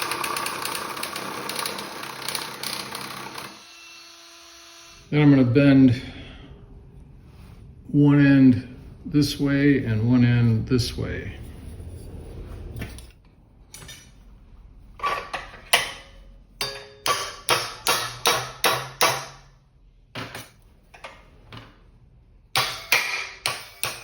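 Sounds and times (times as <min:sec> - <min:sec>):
hammer striking sheet metal: 0:15.7 - 0:19.5, 0:22.5 - 0:24.0.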